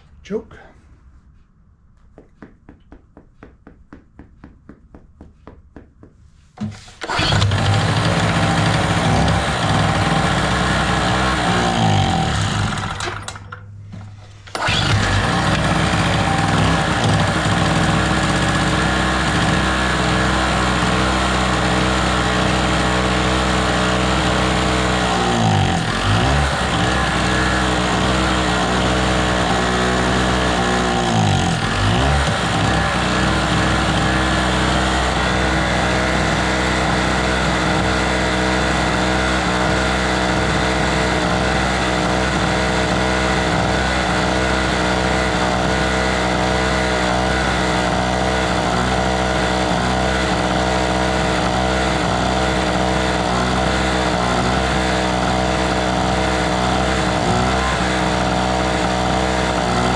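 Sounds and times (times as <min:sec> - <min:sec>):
small generator engine running: 0:06.8 - 0:59.9.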